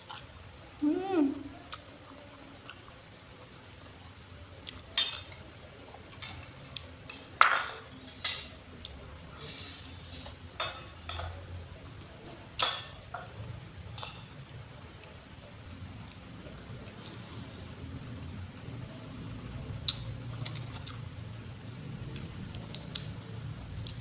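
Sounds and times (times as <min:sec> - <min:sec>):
cutlery clinking on a plate: 0:05.0 - 0:05.5, 0:06.1 - 0:08.6, 0:09.3 - 0:11.5, 0:12.6 - 0:13.3, 0:14.0 - 0:14.3
cutlery scraping: 0:05.0 - 0:05.5, 0:06.1 - 0:08.6, 0:09.3 - 0:11.5, 0:12.6 - 0:13.3, 0:14.0 - 0:14.3.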